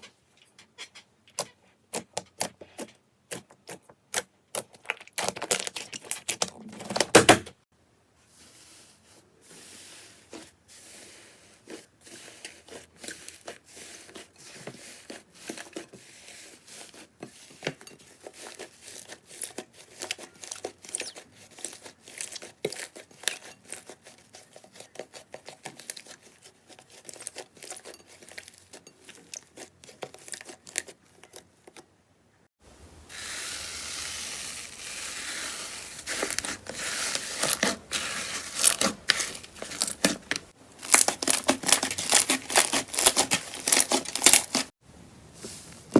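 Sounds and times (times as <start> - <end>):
slime crackling and popping: 4.5 - 6.5, 40.9 - 44.7.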